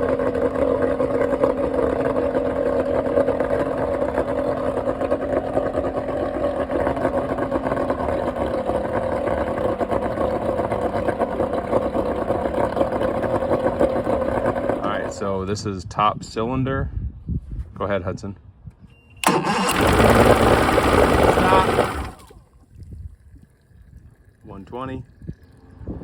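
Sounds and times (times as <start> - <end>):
outboard motor idling: 0.0 - 15.4, 19.2 - 26.0.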